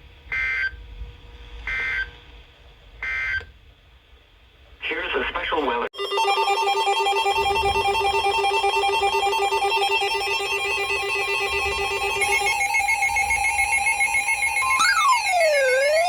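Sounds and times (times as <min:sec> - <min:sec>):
electronic alert tone trilling: 0:06.0 - 0:16.0.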